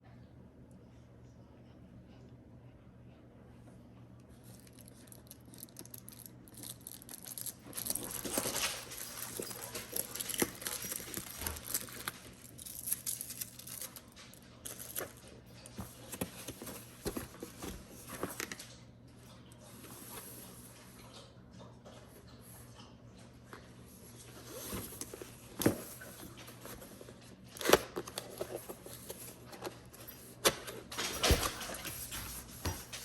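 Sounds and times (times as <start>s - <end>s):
packaging rustling: 4.5s - 18.6s, 24.3s - 33.0s.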